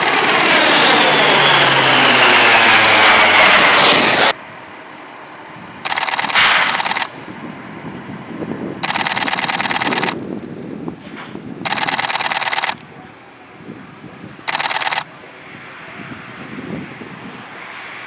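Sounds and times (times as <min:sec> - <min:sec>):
camera shutter clicking: 0:05.9 - 0:07.1, 0:08.8 - 0:10.2, 0:11.7 - 0:12.8, 0:14.5 - 0:15.1.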